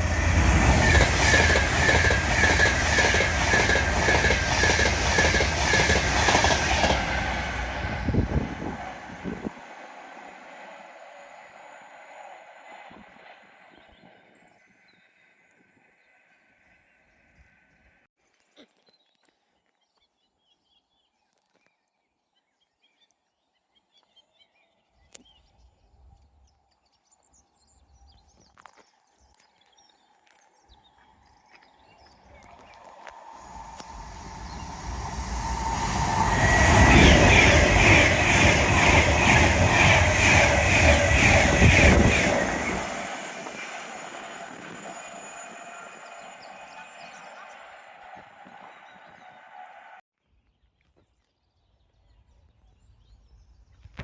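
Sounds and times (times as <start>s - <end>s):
train passing at speed: 0.0s - 14.2s, 32.6s - 50.0s.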